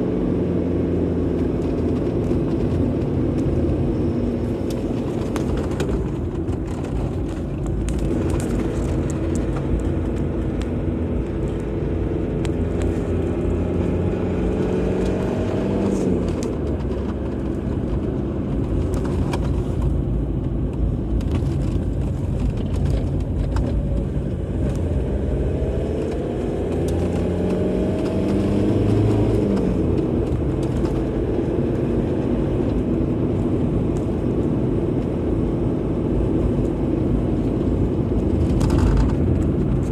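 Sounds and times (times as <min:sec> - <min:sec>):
car engine accelerating: 0:00.0 - 0:39.9
road and tyre noise: 0:00.0 - 0:39.9.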